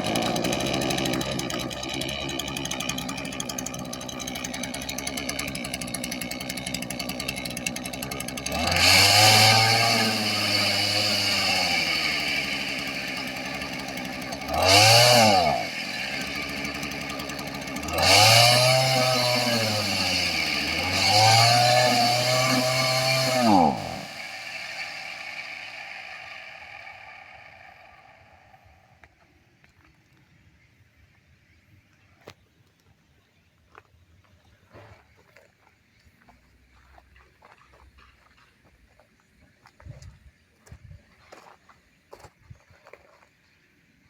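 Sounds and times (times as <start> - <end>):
brush cutter engine idling and revving: 0.0 - 29.1.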